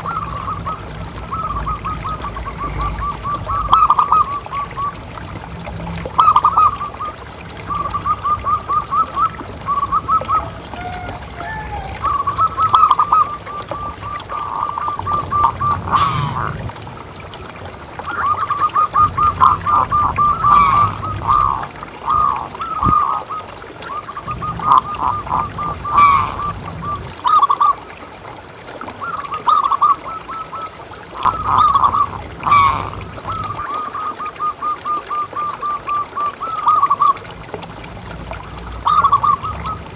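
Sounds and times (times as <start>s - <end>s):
doves cooing: 6.2s - 27.8s, 29.0s - 37.3s, 38.4s - 39.9s.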